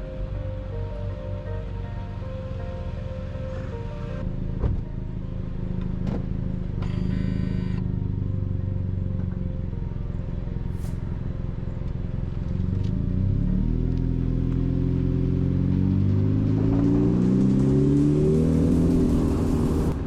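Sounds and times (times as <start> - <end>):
car engine running: 4.5 - 20.0
tyre and road noise: 10.8 - 20.0.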